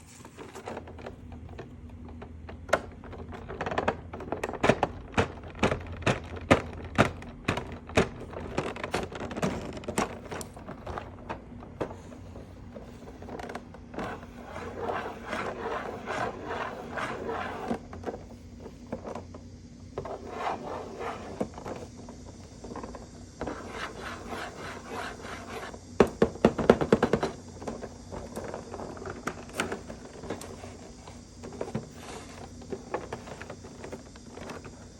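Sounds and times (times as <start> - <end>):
hands rubbing and scraping packaging: 7.4 - 19.1, 20.0 - 21.9, 23.4 - 25.8.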